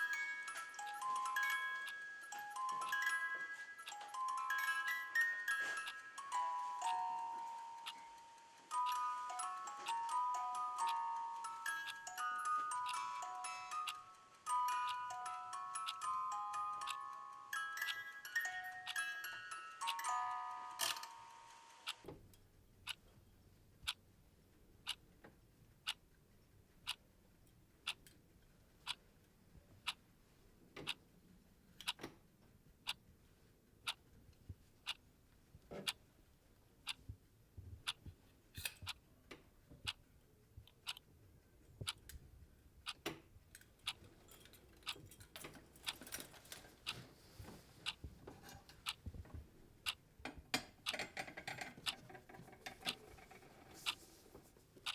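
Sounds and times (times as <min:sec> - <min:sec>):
clock ticking: 0:00.0 - 0:22.1, 0:22.8 - 0:23.2, 0:24.8 - 0:25.1, 0:25.8 - 0:26.0, 0:26.8 - 0:27.1, 0:27.8 - 0:28.1, 0:28.8 - 0:29.0, 0:29.8 - 0:30.0, 0:30.8 - 0:31.0, 0:31.8 - 0:32.1, 0:33.8 - 0:34.1, 0:34.8 - 0:35.1, 0:36.8 - 0:37.1, 0:37.8 - 0:39.0, 0:40.6 - 0:41.1, 0:41.8 - 0:42.2, 0:42.8 - 0:43.2, 0:43.8 - 0:44.0, 0:44.8 - 0:47.0, 0:47.8 - 0:48.1, 0:48.7 - 0:54.0
small irregular clicks and knocks: 0:00.0 - 0:24.0, 0:24.8 - 0:30.0, 0:30.7 - 0:31.1, 0:31.7 - 0:36.1, 0:36.8 - 0:41.1, 0:41.7 - 0:54.9.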